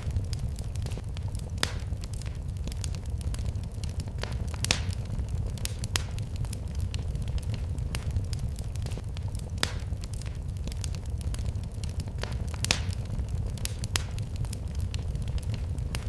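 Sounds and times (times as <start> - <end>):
fire crackling and popping: 0.0 - 16.0
low rumble of flames: 0.0 - 16.0.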